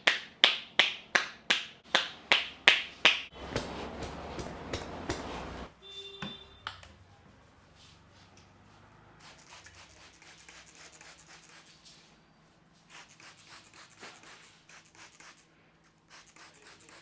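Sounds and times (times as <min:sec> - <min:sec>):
hands rubbing through hair: 0:03.0 - 0:05.7.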